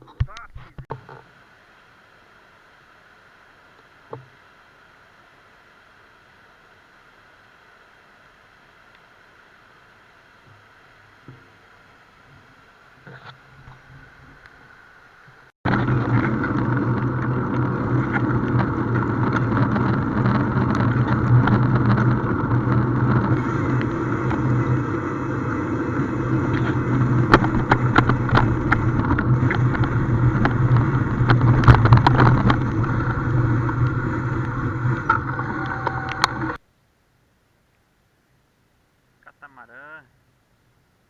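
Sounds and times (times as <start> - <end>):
boat engines droning: 13.9 - 36.6.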